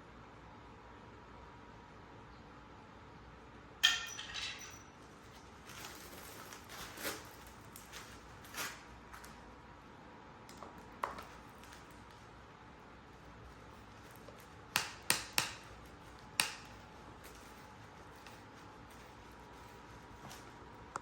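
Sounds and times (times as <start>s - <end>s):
sharp metallic clink: 3.8s - 4.9s
small objects handled and set down: 10.5s - 12.2s.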